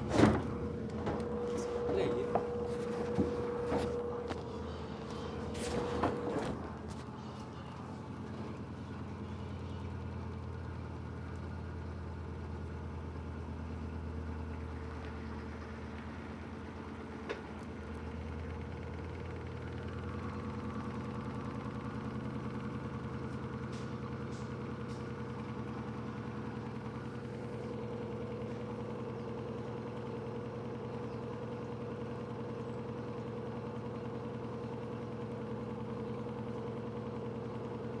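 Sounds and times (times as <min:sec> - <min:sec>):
washing machine spinning: 0:00.0 - 0:08.8
washing machine spinning hum: 0:00.0 - 0:38.0.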